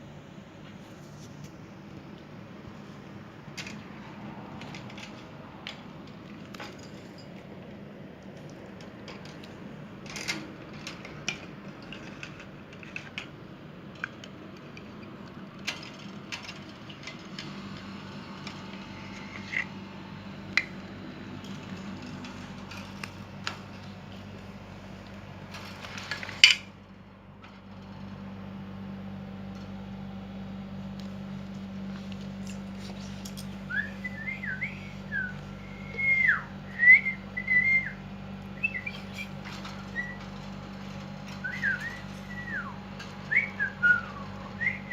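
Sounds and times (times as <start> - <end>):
low steady hum: 0.0 - 44.9
birds clicking and tapping: 38.6 - 44.9.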